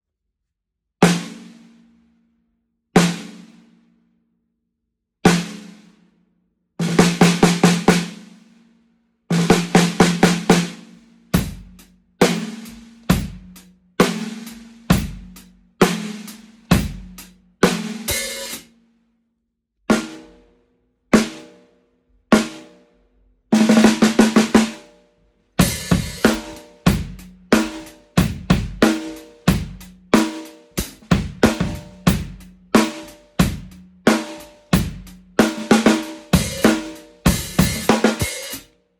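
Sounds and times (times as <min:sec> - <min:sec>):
snare drum roll: 0:06.8 - 0:08.2, 0:09.3 - 0:10.8, 0:23.6 - 0:24.8, 0:25.6 - 0:38.7
bass drum: 0:11.3 - 0:14.2, 0:14.9 - 0:16.0, 0:16.7 - 0:18.3, 0:25.6 - 0:38.4
snare drum hits: 0:25.6 - 0:29.1.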